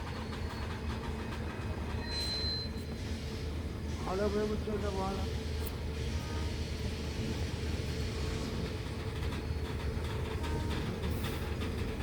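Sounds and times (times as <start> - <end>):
freight train wagons rumbling: 0.0 - 12.0
faint metallic squeaks: 2.0 - 2.9.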